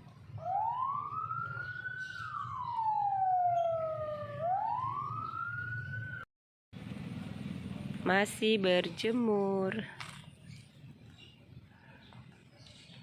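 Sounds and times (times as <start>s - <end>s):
siren wailing: 0.3s - 6.3s.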